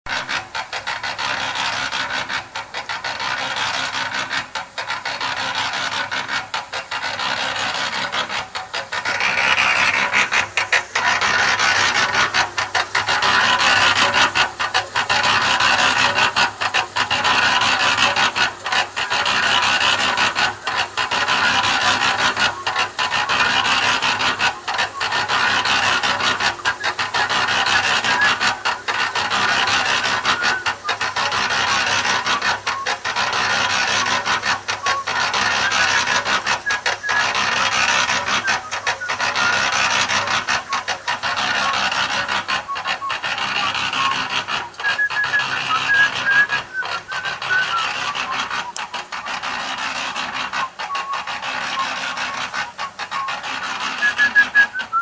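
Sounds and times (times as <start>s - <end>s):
concrete mixer drum churning: 0.0s - 55.0s
person whistling: 30.2s - 30.9s, 34.8s - 39.7s, 42.6s - 48.8s, 54.0s - 55.0s.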